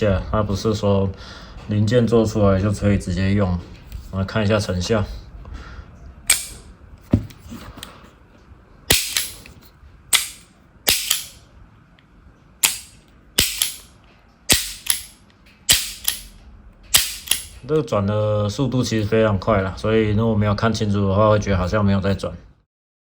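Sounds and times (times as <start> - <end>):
revolver hammer clicks: 6.3 - 6.6, 8.9 - 11.4, 12.6 - 13.9, 14.5 - 17.6
revolver action snapping: 6.3 - 6.7, 8.9 - 11.4, 12.6 - 17.6.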